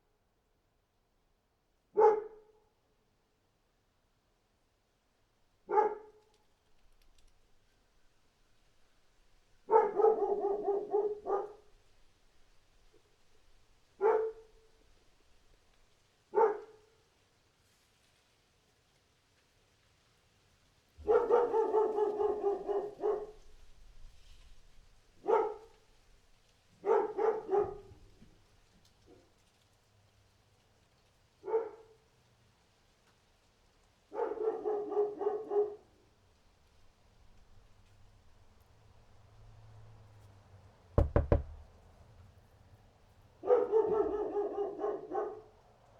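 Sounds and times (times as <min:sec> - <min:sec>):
dog barking: 0:01.9 - 0:02.6, 0:05.7 - 0:06.2, 0:09.6 - 0:11.8, 0:14.0 - 0:14.8, 0:16.3 - 0:17.0, 0:21.0 - 0:23.6, 0:25.2 - 0:25.8, 0:26.8 - 0:28.1, 0:31.4 - 0:32.1, 0:34.1 - 0:36.0, 0:43.4 - 0:45.6.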